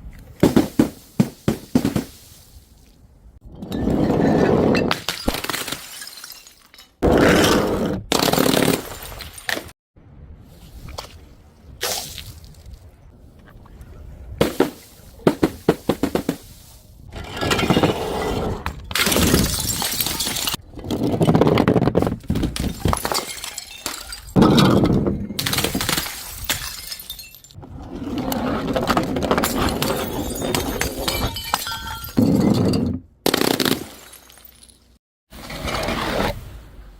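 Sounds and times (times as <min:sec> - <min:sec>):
glass bottles breaking: 0:03.6 - 0:07.0, 0:18.8 - 0:20.6, 0:22.0 - 0:27.6, 0:29.4 - 0:34.8.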